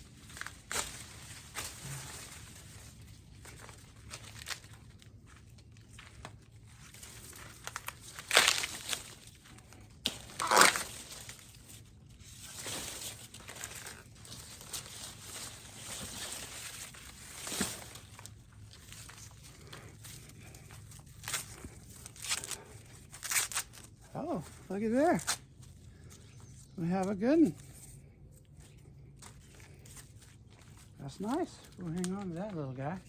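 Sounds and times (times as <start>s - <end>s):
corn husks tearing: 0.0s - 26.2s, 29.3s - 33.0s
rustling corn leaves: 0.0s - 33.0s
corn ears snapping off stalks: 7.2s - 11.6s.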